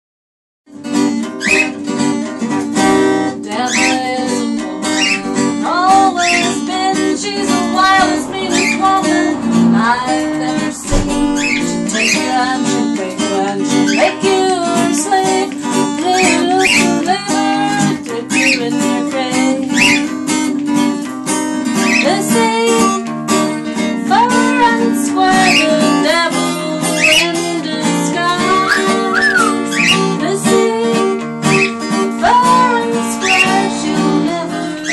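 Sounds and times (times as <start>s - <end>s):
acoustic guitar strumming: 0.7s - 34.9s
rising whistled chirps: 1.4s - 1.7s, 4.9s - 5.3s, 6.0s - 12.7s, 21.8s - 22.1s, 28.6s - 30.1s
person singing: 2.9s - 20.8s, 21.8s - 23.1s, 24.0s - 34.9s.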